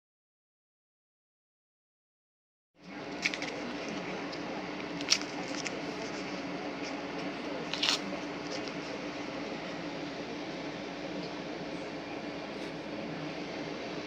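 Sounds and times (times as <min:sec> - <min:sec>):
kitchen mechanical hum: 0:02.8 - 0:14.0.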